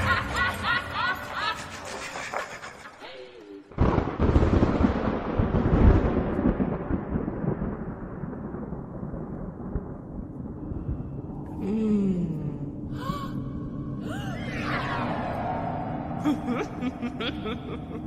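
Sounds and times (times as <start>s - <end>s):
thunder rolling: 3.7s - 11.7s
low steady drone: 11.0s - 18.0s.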